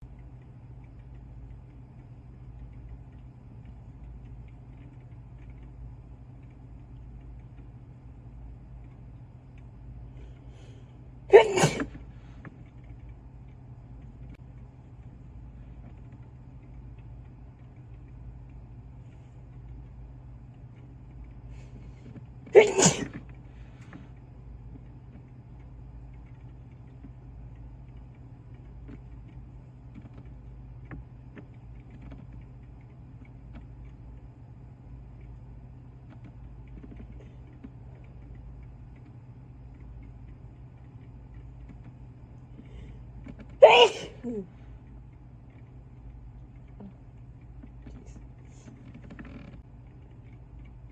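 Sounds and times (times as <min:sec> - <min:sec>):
person sneezing: 0:11.3 - 0:12.0, 0:22.6 - 0:23.2, 0:43.6 - 0:44.5.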